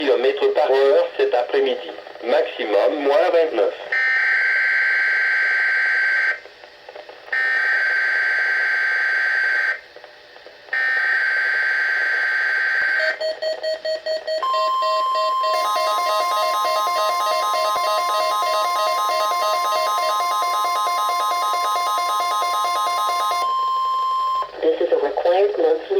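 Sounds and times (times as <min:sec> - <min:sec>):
rapid electronic beeping: 0:13.0 - 0:23.5
steady high alert tone: 0:14.4 - 0:24.4.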